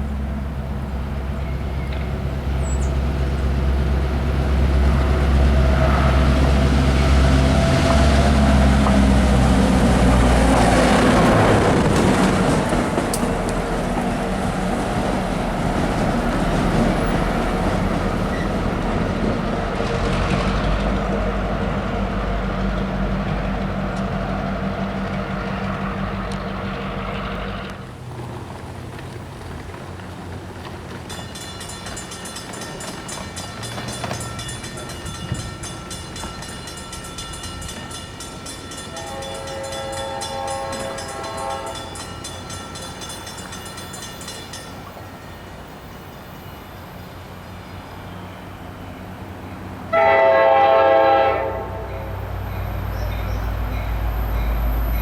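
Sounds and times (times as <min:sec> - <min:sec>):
diesel locomotive engine drone: 0:00.0 - 0:55.0.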